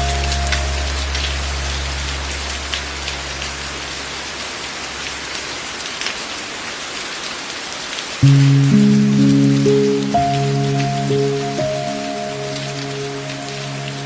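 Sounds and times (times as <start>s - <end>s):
low held music chord: 0.0s - 4.0s, 8.2s - 14.0s
raindrop ticks: 0.0s - 6.2s
steady rain: 0.0s - 14.0s.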